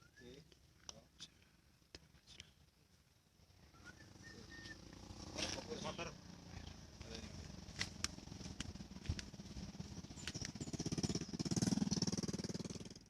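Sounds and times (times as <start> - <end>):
small engine pulsing: 3.8 - 13.0.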